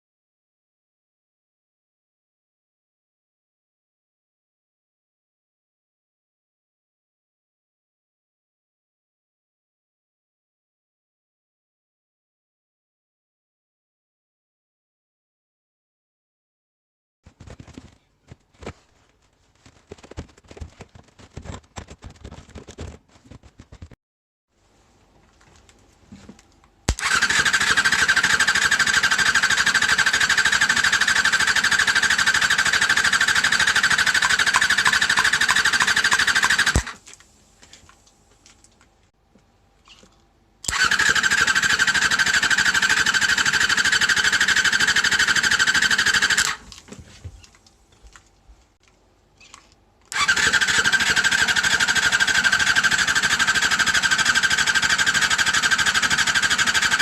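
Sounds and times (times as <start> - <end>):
engine cranking on starter: 27.0 - 37.0, 40.7 - 46.6, 50.1 - 57.0.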